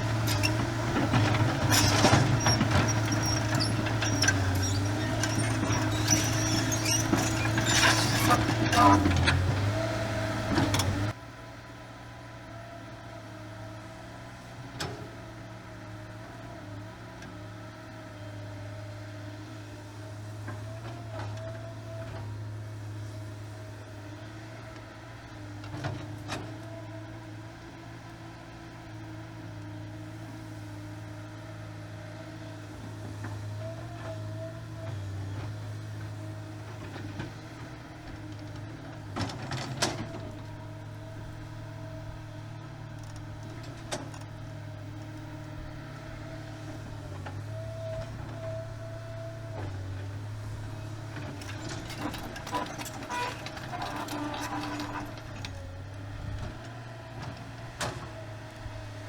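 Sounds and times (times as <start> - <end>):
excavator diesel engine running: 0.0 - 59.0
metal clanks and rattles: 51.1 - 55.6.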